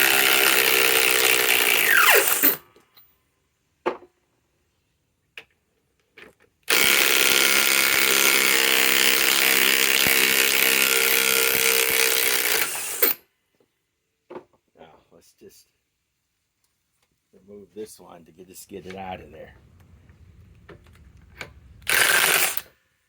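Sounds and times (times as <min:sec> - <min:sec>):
impact wrench running: 0:00.0 - 0:02.6, 0:06.7 - 0:13.2, 0:21.8 - 0:22.7.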